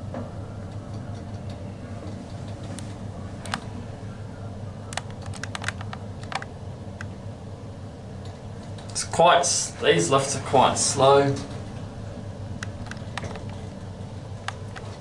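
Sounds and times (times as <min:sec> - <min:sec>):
lift humming: 0:00.0 - 0:15.0
sharp light clicks: 0:04.9 - 0:07.1.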